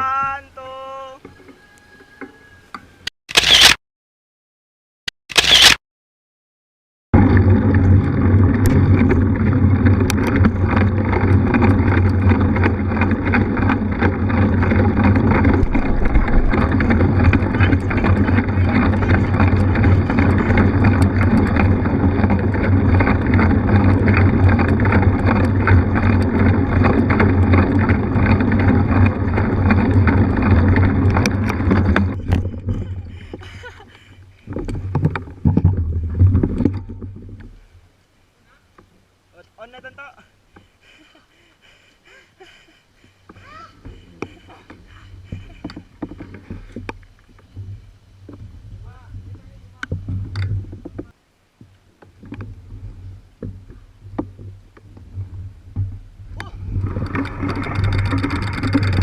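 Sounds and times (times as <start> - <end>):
bike tyre noise: 7.2 - 39.0, 40.6 - 51.2, 52.0 - 59.0
wind buffeting microphone: 7.4 - 36.7.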